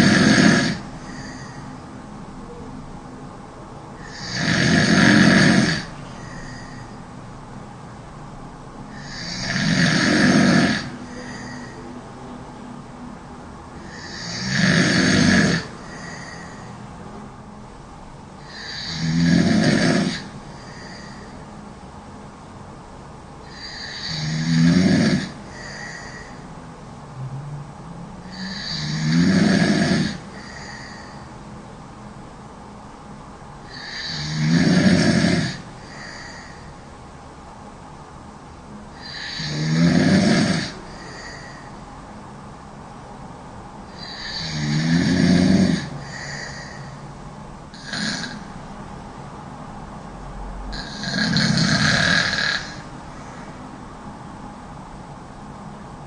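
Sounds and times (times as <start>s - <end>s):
woman snoring: 0.0s - 1.7s, 4.0s - 7.0s, 8.9s - 11.8s, 13.8s - 16.8s, 18.4s - 21.4s, 23.4s - 26.4s, 28.2s - 31.3s, 33.6s - 36.7s, 38.9s - 41.7s, 43.9s - 47.0s, 47.8s - 48.6s, 50.7s - 53.5s
quiet breathing: 0.0s - 2.7s, 5.2s - 17.2s, 19.6s - 21.8s, 23.4s - 24.5s, 25.2s - 32.2s, 35.2s - 37.1s, 38.7s - 42.5s, 43.8s - 49.3s, 50.8s - 54.6s.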